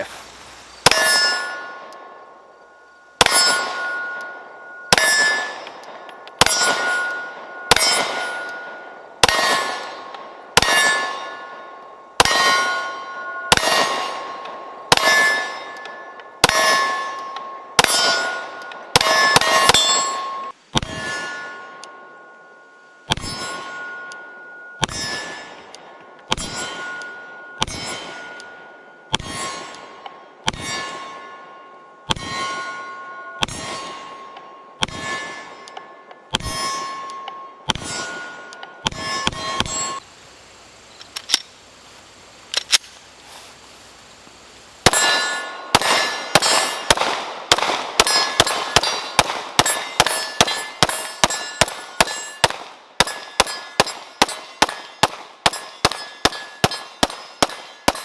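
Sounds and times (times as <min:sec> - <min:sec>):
steel targets ringing: 0:00.8 - 0:40.1, 0:44.8 - 0:58.0
pistol shots: 0:04.9 - 0:08.6, 0:09.2 - 0:11.3, 0:12.2 - 0:12.9, 0:13.5 - 0:15.6, 0:16.4 - 0:17.1, 0:17.8 - 0:20.2, 0:44.8 - 0:58.0.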